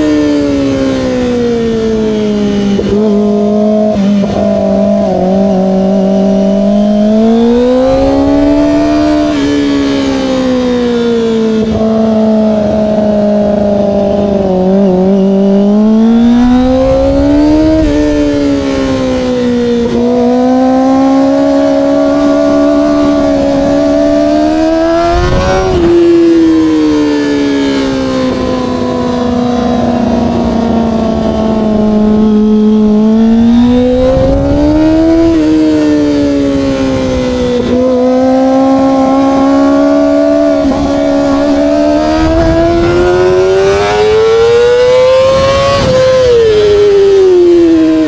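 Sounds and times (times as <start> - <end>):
motorcycle engine revving: 0.0 - 48.0
wind rushing: 16.2 - 29.1, 29.8 - 47.2.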